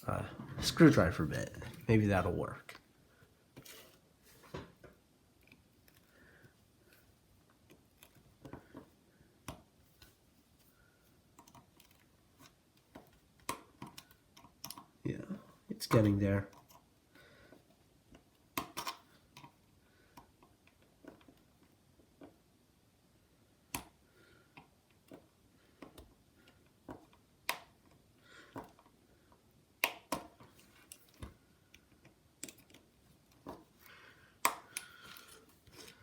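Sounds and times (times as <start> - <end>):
screwdriver clicks and scrapes on metal: 29.8 - 33.6.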